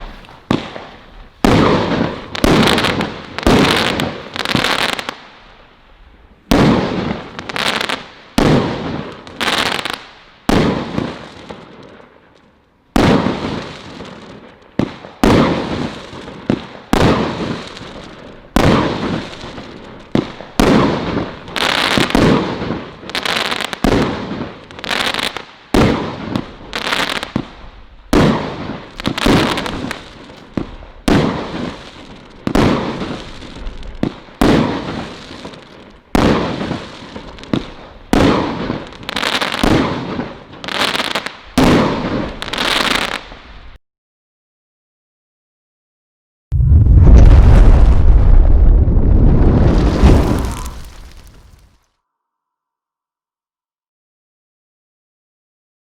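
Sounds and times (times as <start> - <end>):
firework shots with crackle: 0.0 - 5.6, 6.5 - 12.1, 13.0 - 43.7, 46.5 - 51.8.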